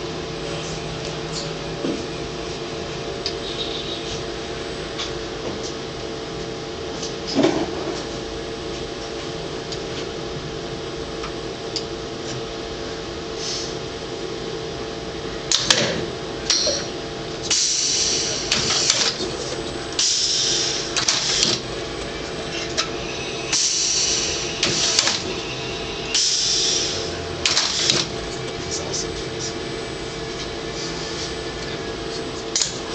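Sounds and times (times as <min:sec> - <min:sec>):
machine hum: 0:00.0 - 0:32.9
compressed air hissing: 0:13.4 - 0:13.8, 0:17.5 - 0:19.1, 0:20.0 - 0:21.6, 0:22.5 - 0:28.0
machine clicks: 0:27.4 - 0:28.1.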